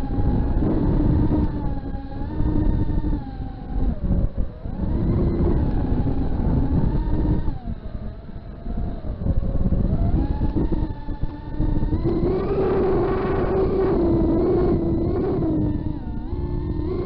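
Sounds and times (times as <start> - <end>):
drone motors whining: 0.0 - 17.0
heavy low rumble: 8.6 - 17.0.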